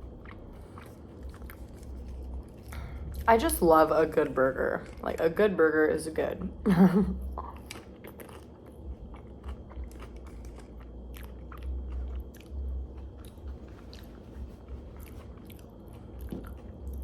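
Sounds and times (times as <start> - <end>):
person chewing food: 0.0 - 3.3, 4.8 - 5.1, 7.2 - 17.0.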